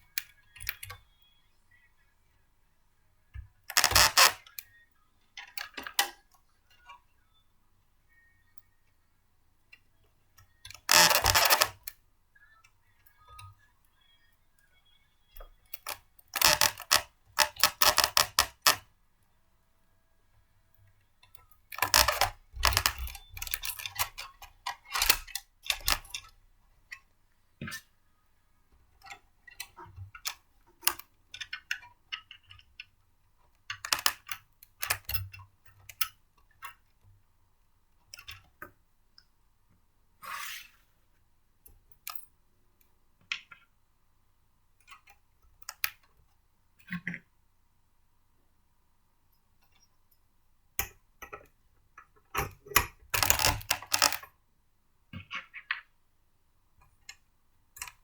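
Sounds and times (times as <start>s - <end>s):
plastic parts clicking and rattling: 3.4s - 4.8s, 5.4s - 7.0s, 10.4s - 12.0s, 15.4s - 18.9s, 20.9s - 27.9s, 28.9s - 37.1s, 50.8s - 54.3s.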